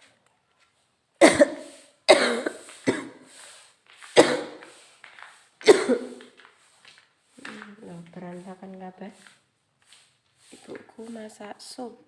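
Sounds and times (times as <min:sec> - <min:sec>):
woman coughing: 0:01.2 - 0:03.2, 0:04.2 - 0:04.6, 0:05.7 - 0:06.2.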